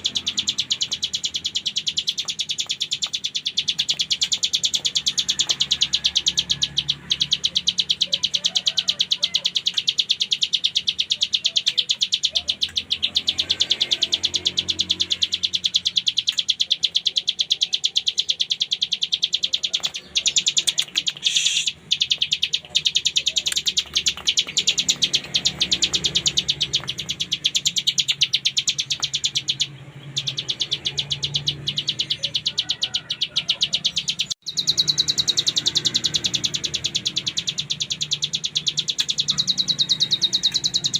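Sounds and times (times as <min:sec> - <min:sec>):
bird singing buzzing trill: 0:00.0 - 0:40.9.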